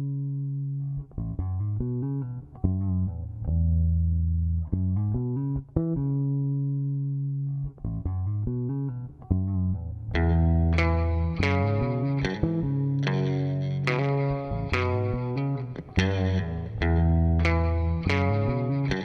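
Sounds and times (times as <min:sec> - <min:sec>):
low bass notes: 0:00.0 - 0:19.0
plucked guitar-like melody: 0:04.7 - 0:19.0.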